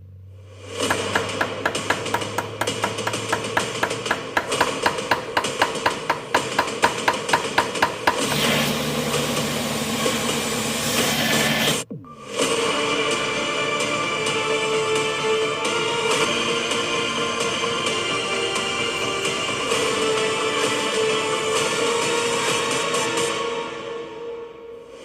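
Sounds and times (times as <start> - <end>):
machine running steadily: 0.7 - 11.9
hammer tapping on metal: 0.8 - 8.3.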